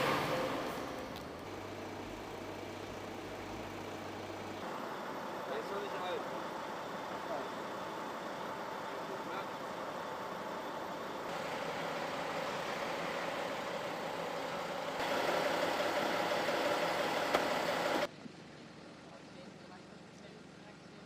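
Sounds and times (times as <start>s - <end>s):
vehicle engine noise: 0.0s - 20.6s.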